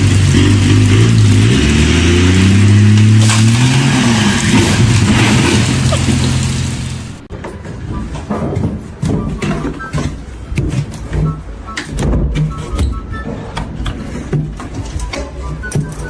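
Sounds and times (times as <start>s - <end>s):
heavy engine revving: 0.0s - 7.3s
loud rough noise: 0.0s - 7.3s.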